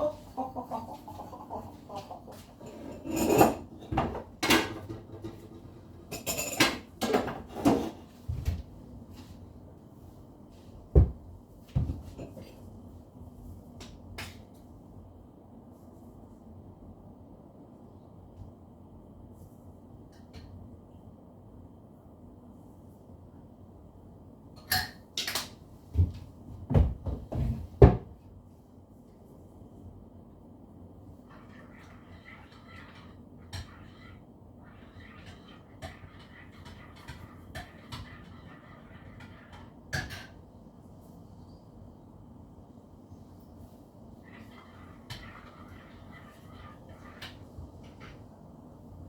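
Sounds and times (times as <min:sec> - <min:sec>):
pots and pans clattering: 0:01.3 - 0:08.0, 0:31.3 - 0:40.4
sharp kitchen clatters: 0:06.1 - 0:08.0
dull knocks and thumps: 0:10.9 - 0:12.2, 0:26.0 - 0:28.1.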